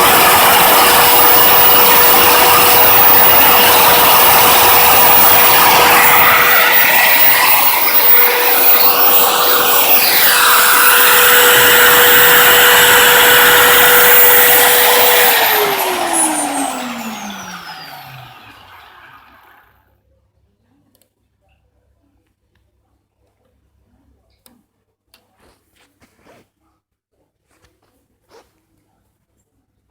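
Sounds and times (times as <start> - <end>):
milling motor whining: 0.0 - 19.7.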